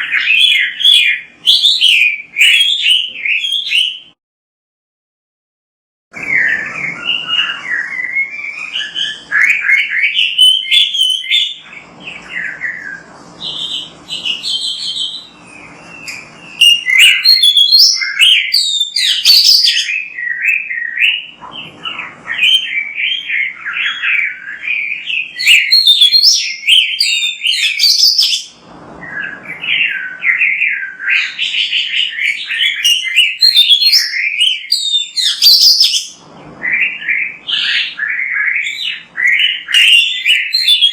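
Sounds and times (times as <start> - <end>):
bird singing chirps and whistles: 0.0 - 4.2, 6.2 - 40.9.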